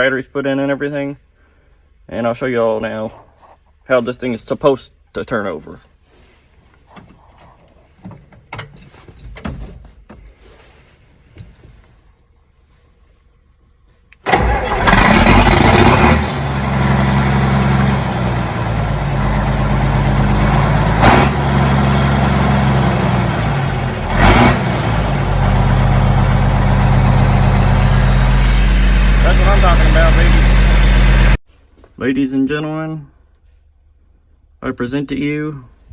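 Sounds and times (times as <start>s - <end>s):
diesel tractor engine starting and idling: 14.1s - 31.4s.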